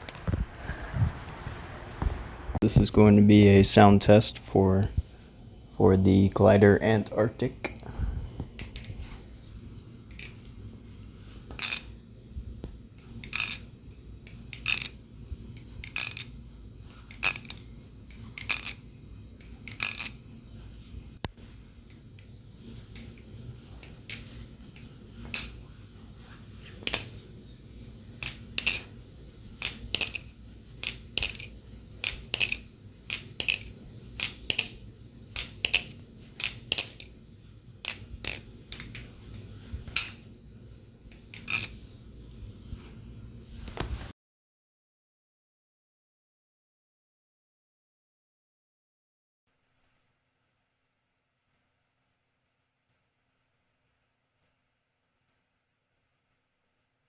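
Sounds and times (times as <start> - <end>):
butterfly knife metal clacks: 14.3 - 15.0, 17.1 - 18.8, 19.4 - 20.2, 26.9 - 27.2, 29.6 - 34.8, 35.4 - 37.1, 37.9 - 40.2.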